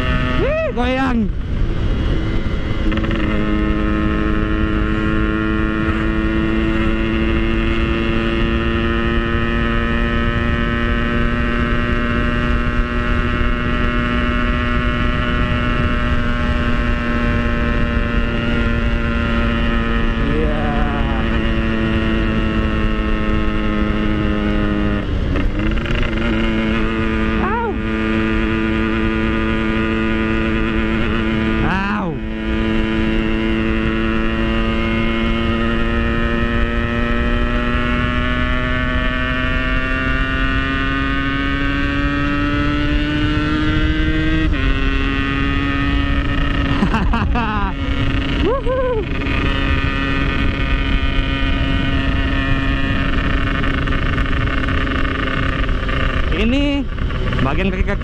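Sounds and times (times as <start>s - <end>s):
two-stroke motorcycle engine revving: 0.0s - 58.0s
wind on microphone: 37.6s - 58.0s.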